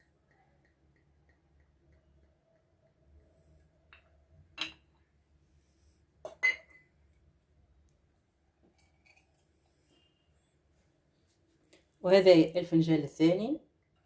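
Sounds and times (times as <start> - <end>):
cup clinking against kitchenware: 6.2 - 6.9.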